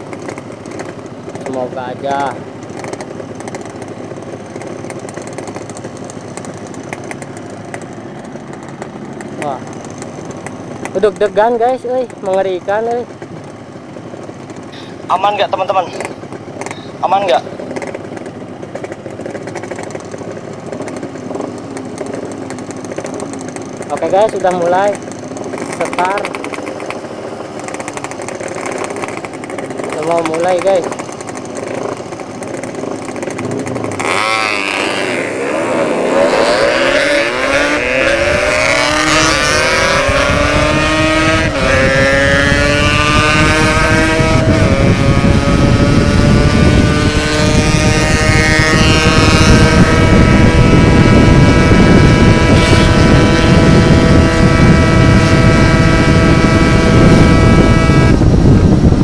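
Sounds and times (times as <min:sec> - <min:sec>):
motorcycle accelerating: 0:00.0 - 0:59.0
wind rumble on microphone: 0:35.2 - 0:59.0.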